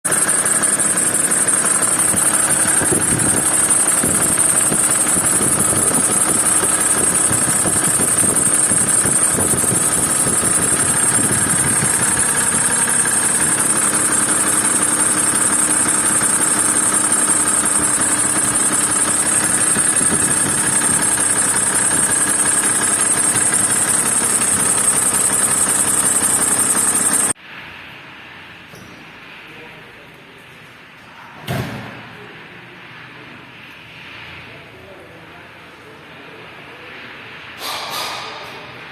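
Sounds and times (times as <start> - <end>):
car engine idling: 0.1 - 27.4
high-pitched pulley whistle: 0.1 - 27.4.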